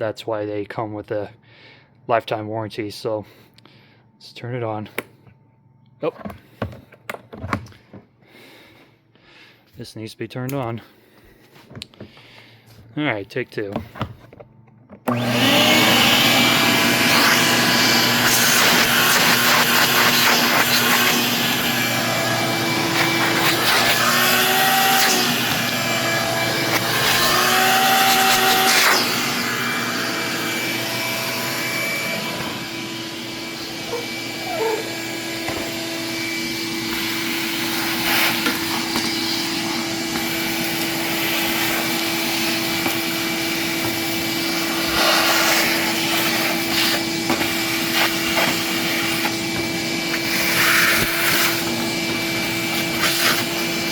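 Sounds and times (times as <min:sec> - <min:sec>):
shop vacuum running: 0:15.0 - 0:53.9.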